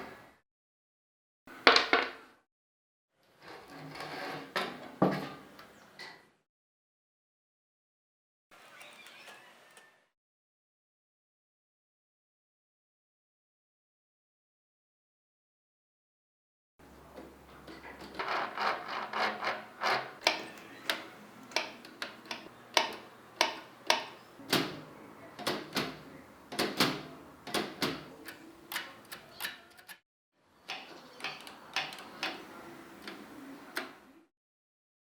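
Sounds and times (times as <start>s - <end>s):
typewriter parts clicking and knocking: 19.3s - 30.0s, 30.7s - 33.9s.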